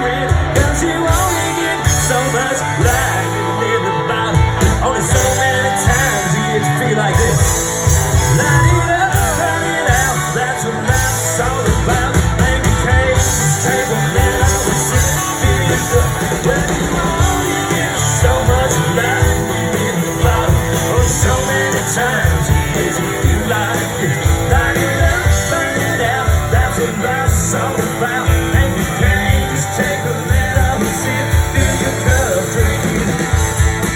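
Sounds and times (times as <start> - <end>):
drums: 0.0 - 33.9
guitar: 0.0 - 33.9
person singing: 0.0 - 33.9.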